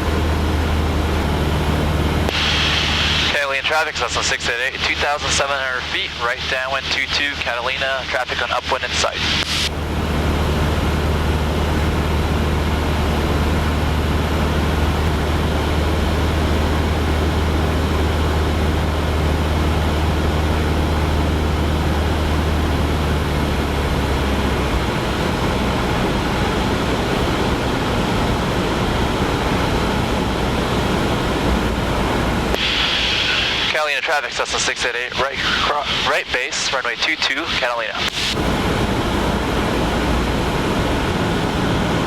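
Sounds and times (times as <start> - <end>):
propeller aircraft engine drone: 0.0 - 42.0
rush of wind: 38.1 - 42.0.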